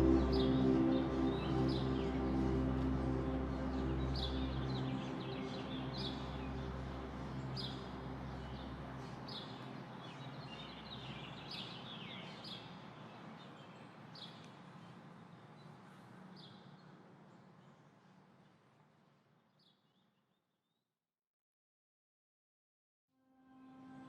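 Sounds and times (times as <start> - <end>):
low background music: 0.0 - 11.6.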